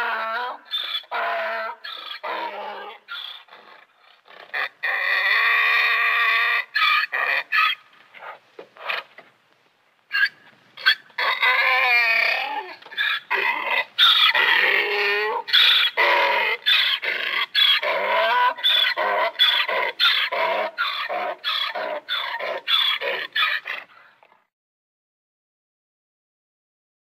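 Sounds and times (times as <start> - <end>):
donkey braying: 0.0 - 3.8, 4.4 - 9.2, 10.1 - 24.2.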